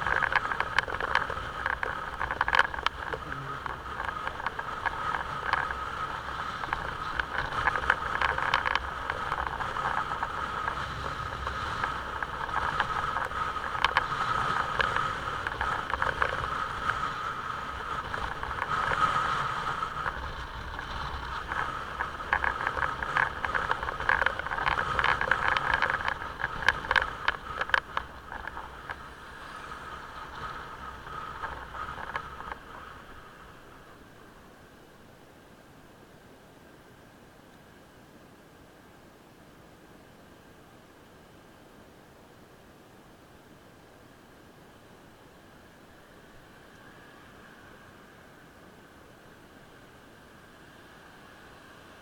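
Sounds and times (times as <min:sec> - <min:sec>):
clicks and rattles: 0:00.0 - 0:17.2, 0:19.9 - 0:29.1, 0:30.0 - 0:32.9
motorcycle engine: 0:00.0 - 0:34.0.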